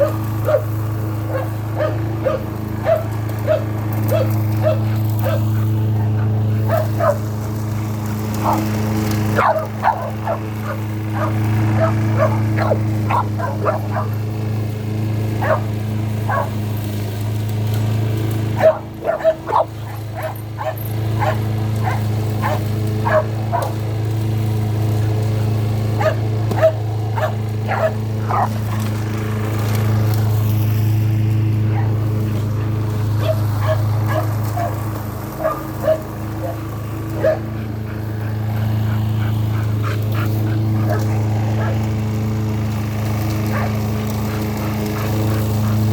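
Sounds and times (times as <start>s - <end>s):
dog barking and yipping: 0.0s - 7.3s, 8.4s - 8.7s, 9.3s - 14.3s, 15.3s - 16.7s, 18.5s - 23.9s, 25.4s - 29.0s, 31.6s - 41.9s, 43.5s - 45.9s
lawnmower engine running: 0.0s - 45.9s.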